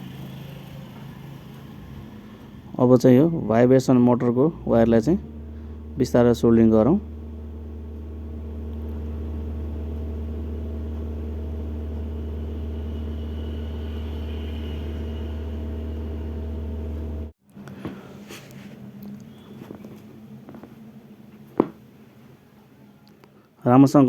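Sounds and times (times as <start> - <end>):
low electrical hum: 0.0 - 24.0.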